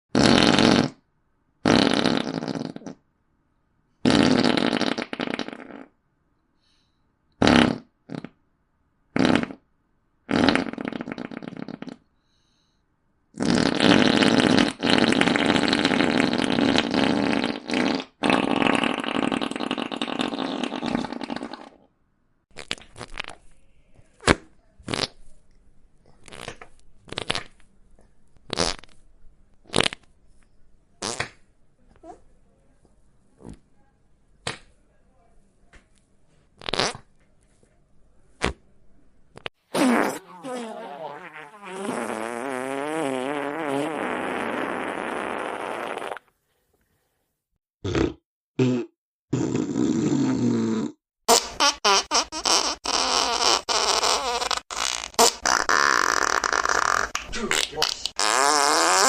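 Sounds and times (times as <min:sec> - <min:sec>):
fart sound effects: 0:00.1 - 0:01.0, 0:01.6 - 0:03.0, 0:04.0 - 0:05.9, 0:07.4 - 0:08.4, 0:09.2 - 0:09.6, 0:10.3 - 0:12.0, 0:13.4 - 0:21.9, 0:24.2 - 0:25.2, 0:26.2 - 0:27.6, 0:28.5 - 0:29.0, 0:29.7 - 0:30.1, 0:31.0 - 0:31.4, 0:36.6 - 0:37.1, 0:38.4 - 0:38.6, 0:39.4 - 0:46.3, 0:47.9 - 0:59.0.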